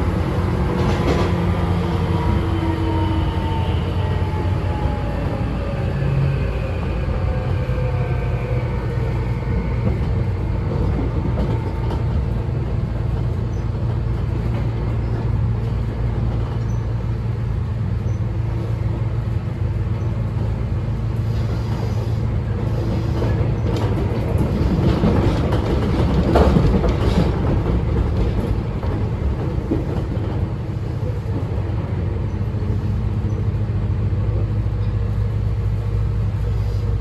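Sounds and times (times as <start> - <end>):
train rail rumble: 0.0 - 37.0.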